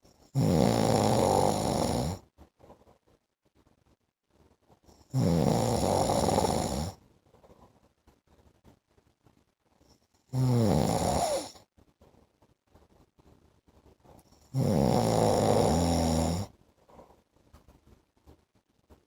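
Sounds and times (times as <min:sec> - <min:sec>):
man snoring: 0:00.4 - 0:02.2, 0:05.1 - 0:07.0, 0:10.3 - 0:11.6, 0:14.5 - 0:16.5.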